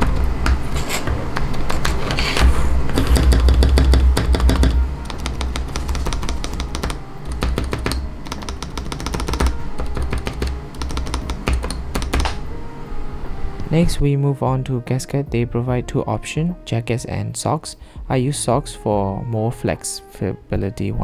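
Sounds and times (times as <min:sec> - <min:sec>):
keyboard key clacks: 0:00.0 - 0:12.8
background music: 0:00.0 - 0:21.0.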